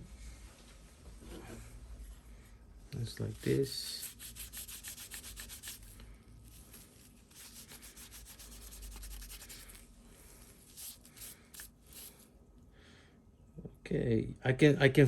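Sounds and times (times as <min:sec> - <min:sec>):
faint rubbing strokes on lighter case: 0:03.2 - 0:12.2.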